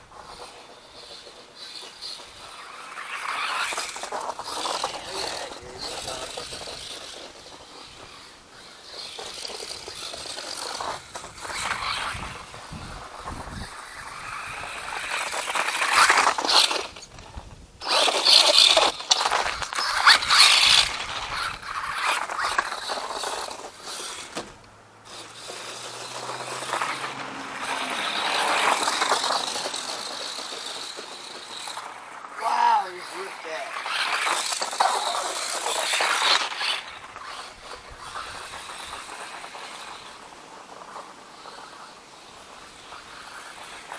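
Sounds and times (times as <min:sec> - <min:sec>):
tires churning through snow: 0:00.0 - 0:43.9.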